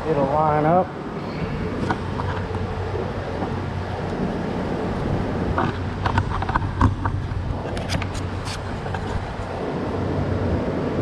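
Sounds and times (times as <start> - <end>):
background rumble: 0.0 - 9.6
wind: 0.0 - 11.0
low hum: 0.7 - 7.6.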